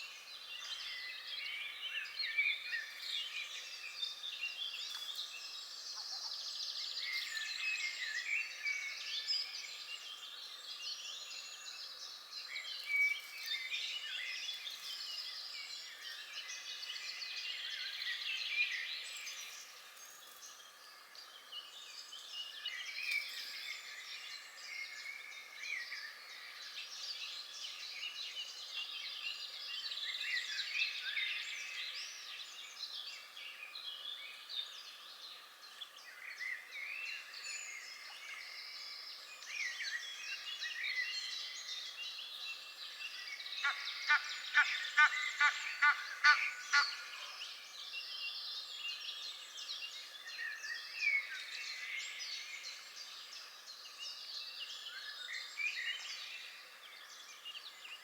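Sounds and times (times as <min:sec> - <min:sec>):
birds chirping and trilling: 0:42.8 - 0:48.1.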